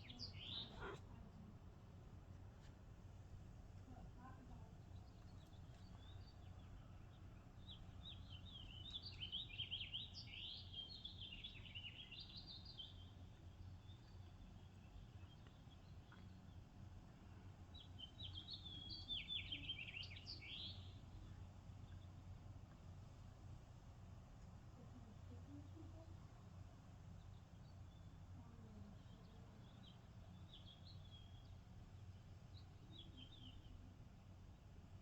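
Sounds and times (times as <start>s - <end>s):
songbird twittering: 0.0s - 1.0s
faint low hum: 0.0s - 35.0s.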